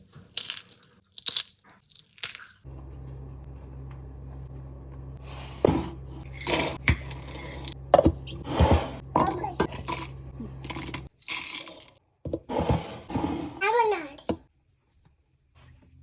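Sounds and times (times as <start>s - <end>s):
rice cracker crunching: 0.3s - 2.6s
steady low hum: 2.7s - 11.1s.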